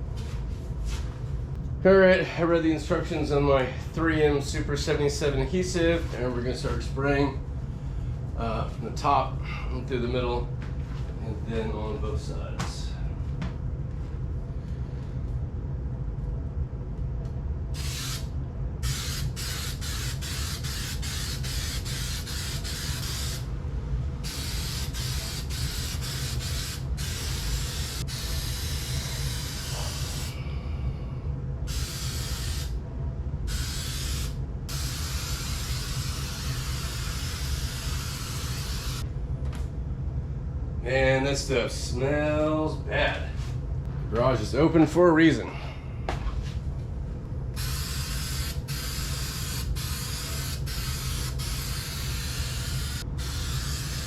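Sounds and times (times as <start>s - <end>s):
aerosol spray hissing: 17.8s - 23.5s, 24.3s - 30.4s, 31.7s - 32.8s, 33.5s - 39.0s, 47.6s - 54.0s.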